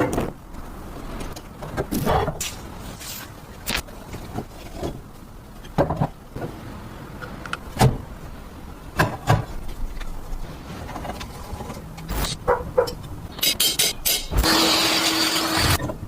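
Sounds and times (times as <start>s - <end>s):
metal parts and tools knocking: 12.8s - 14.4s.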